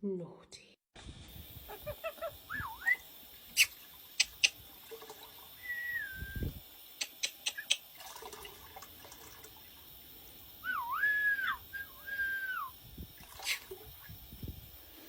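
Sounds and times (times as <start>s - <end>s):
bird whistling: 1.8s - 4.5s, 5.6s - 7.8s, 10.6s - 12.7s
sharp clicks: 3.6s - 4.6s, 7.0s - 7.9s.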